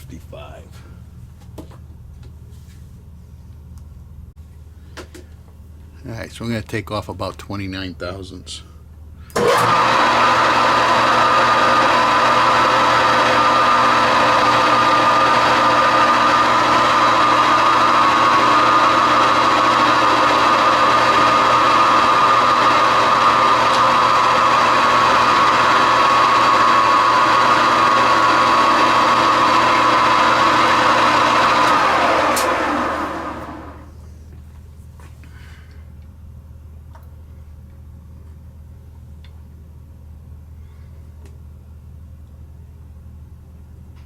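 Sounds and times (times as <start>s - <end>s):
metal lathe whining: 11.8s - 33.9s.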